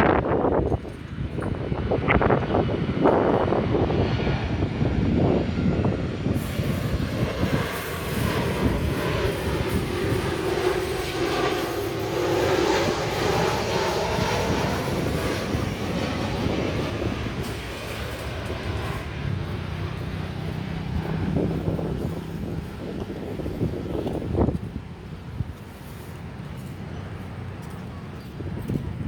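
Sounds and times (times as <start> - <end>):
jet engines rushing: 0.0 - 29.0.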